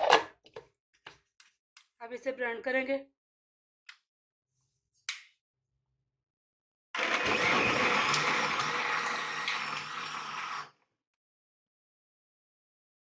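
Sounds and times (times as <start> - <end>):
electric blender grinding: 7.0 - 10.8.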